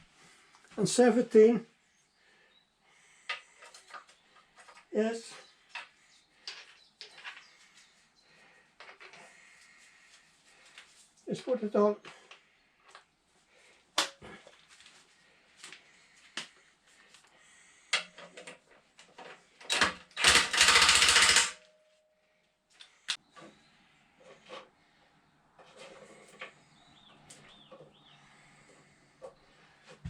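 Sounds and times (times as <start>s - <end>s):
wrench clicking on bolts: 19.7s - 21.6s.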